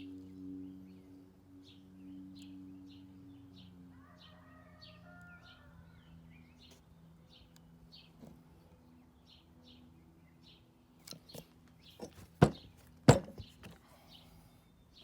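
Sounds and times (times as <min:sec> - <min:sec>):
birds chirping: 0:00.0 - 0:15.0
hammer striking metal punch: 0:12.4 - 0:13.4.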